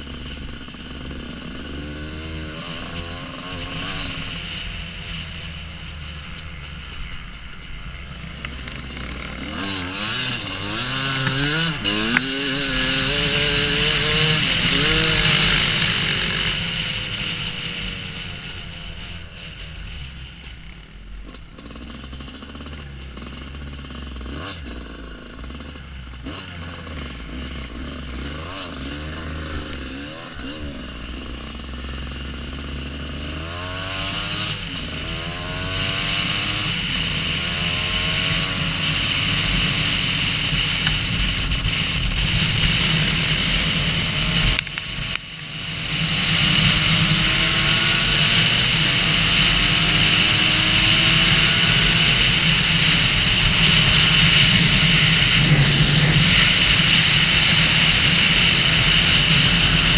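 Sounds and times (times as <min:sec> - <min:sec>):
motorcycle engine revving: 0:00.0 - 0:59.9
wind noise: 0:46.1 - 0:59.9.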